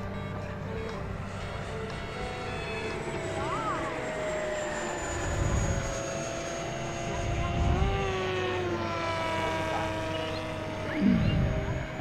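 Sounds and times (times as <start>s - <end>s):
model jet fan motor whining: 0.0s - 12.0s
wind rumble on microphone: 7.0s - 8.2s, 10.9s - 12.0s.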